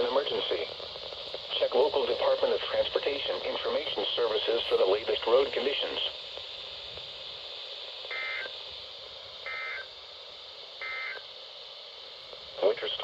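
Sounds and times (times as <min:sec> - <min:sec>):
radio hiss: 0:00.0 - 0:13.0
digital data tone bursts: 0:08.1 - 0:08.6, 0:09.4 - 0:10.0, 0:10.8 - 0:11.2.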